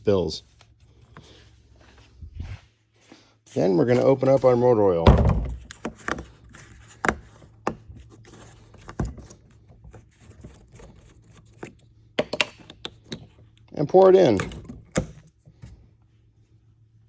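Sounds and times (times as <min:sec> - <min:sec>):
plastic jug clicks and knocks: 0:05.0 - 0:06.3, 0:12.2 - 0:13.3, 0:14.3 - 0:15.2.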